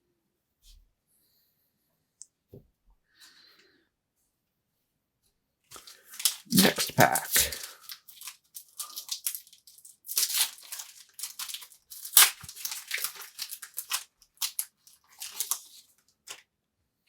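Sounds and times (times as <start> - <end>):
wrapper tearing and crinkling: 5.8 - 16.4.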